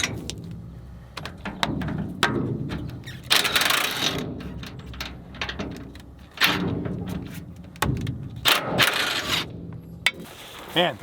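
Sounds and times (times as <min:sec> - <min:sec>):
steady low hum: 0:00.0 - 0:11.0
short scraping hits: 0:08.4 - 0:11.0.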